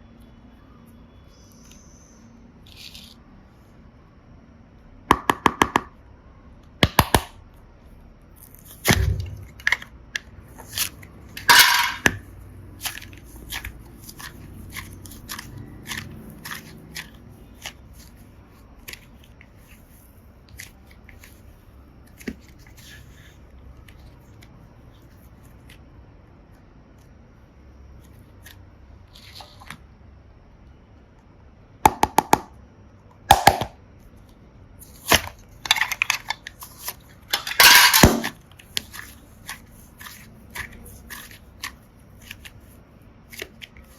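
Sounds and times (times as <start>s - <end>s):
slime and plastic toys crackling: 8.4s - 25.9s, 34.8s - 43.9s.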